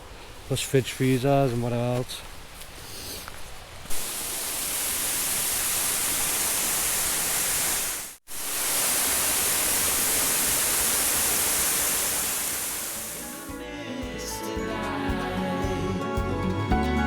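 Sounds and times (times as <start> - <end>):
waterfall rushing: 3.9 - 13.5.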